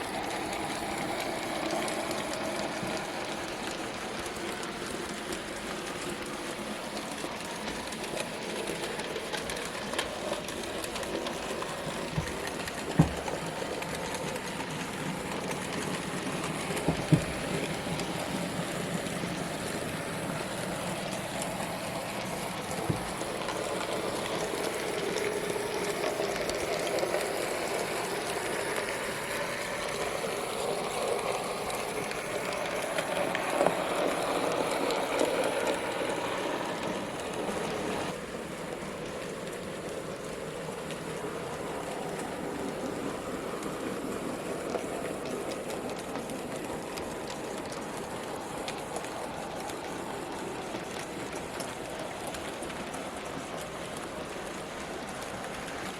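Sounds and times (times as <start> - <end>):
model train wheels rattling: 0.0 - 38.2
model train motor hum: 0.0 - 55.9.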